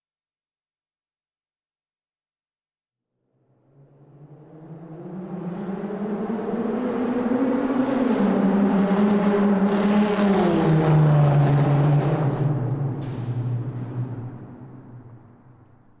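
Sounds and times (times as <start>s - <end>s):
car engine passing: 4.0s - 15.9s.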